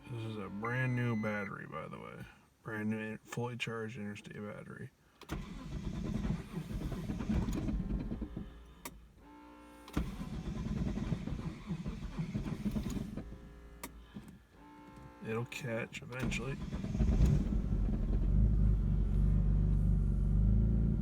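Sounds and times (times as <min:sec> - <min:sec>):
car starter cranking: 0:05.2 - 0:20.0.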